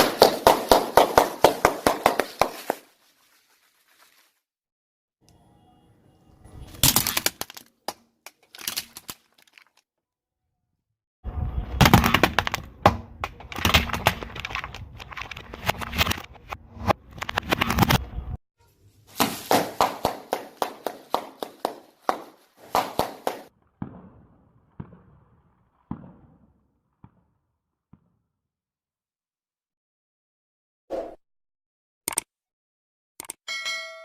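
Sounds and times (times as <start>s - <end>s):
brittle things crushed under car tyre: 6.8s - 9.8s.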